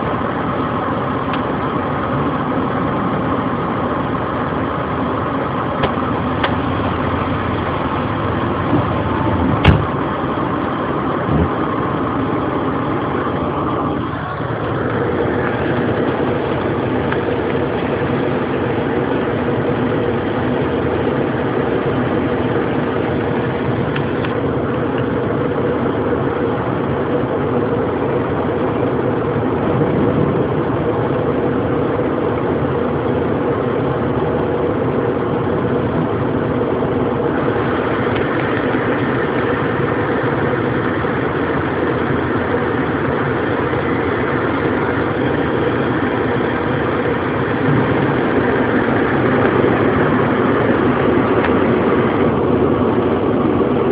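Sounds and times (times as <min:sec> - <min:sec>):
steady hum: 0:00.0 - 0:53.9
heavy rain and hail: 0:37.3 - 0:53.9.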